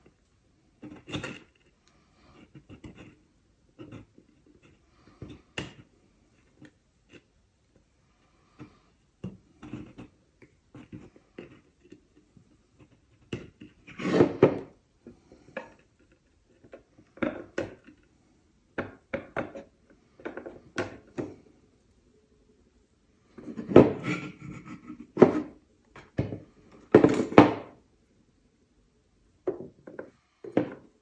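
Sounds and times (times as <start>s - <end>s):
hand tools clicking and scraping: 0.8s - 7.3s.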